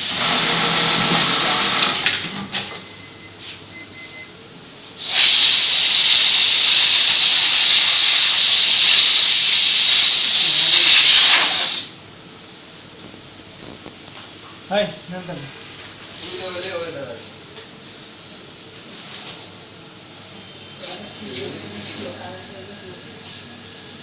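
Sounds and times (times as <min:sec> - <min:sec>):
loud steady hiss: 0:00.0 - 0:02.1, 0:05.0 - 0:12.1.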